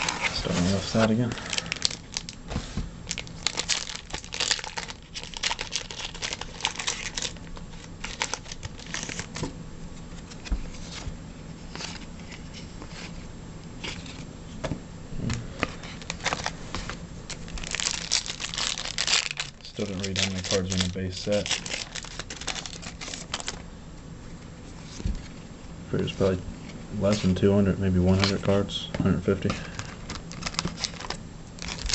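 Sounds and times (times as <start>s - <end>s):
foil wrappers crinkling and tearing: 0.0s - 9.5s, 15.6s - 23.6s, 29.5s - 31.9s.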